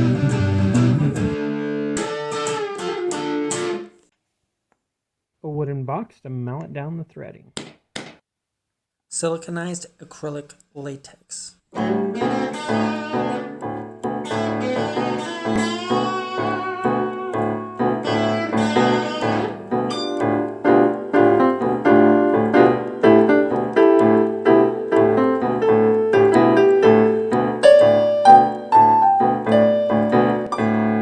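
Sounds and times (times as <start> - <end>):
piano music quick notes: 11.7 - 31.0.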